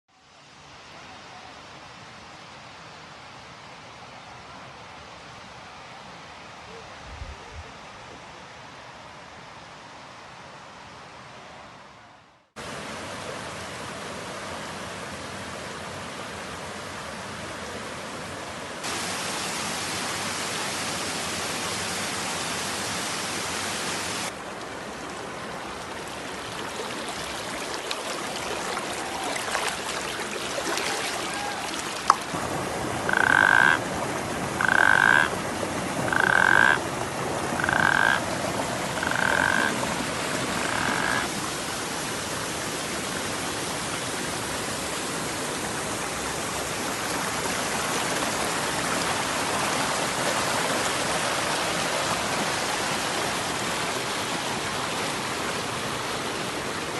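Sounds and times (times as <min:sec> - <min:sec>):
running water hissing: 0:18.8 - 0:42.3
frog calling: 0:33.0 - 0:33.9, 0:34.6 - 0:35.4, 0:36.1 - 0:36.8, 0:37.6 - 0:38.3, 0:38.9 - 0:39.9, 0:40.6 - 0:41.3.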